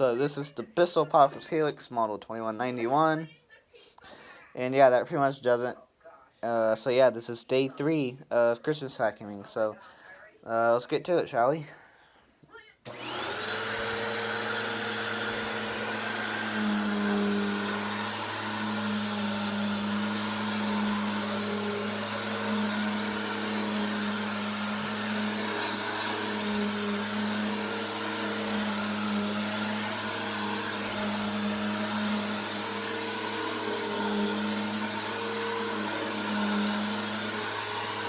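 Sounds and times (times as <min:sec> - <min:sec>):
upright vacuum cleaner motor running: 0:12.9 - 0:38.0.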